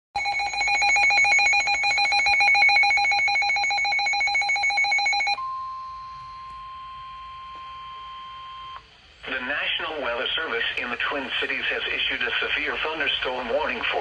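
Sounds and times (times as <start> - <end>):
electronic emergency alert tone: 0.2 - 8.8.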